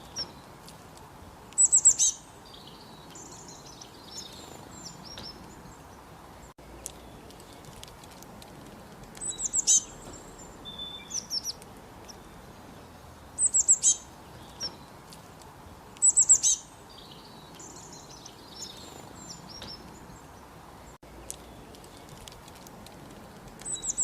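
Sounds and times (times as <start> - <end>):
songbird singing high notes: 1.5 - 6.0, 9.2 - 14.9, 16.0 - 20.5, 23.6 - 24.0
soft bird twittering: 1.5 - 7.7, 9.2 - 15.1, 15.9 - 22.3, 23.6 - 24.0.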